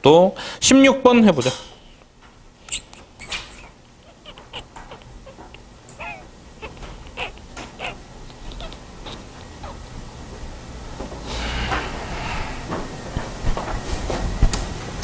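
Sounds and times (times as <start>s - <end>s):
short high squeaks: 2.7s - 5.4s.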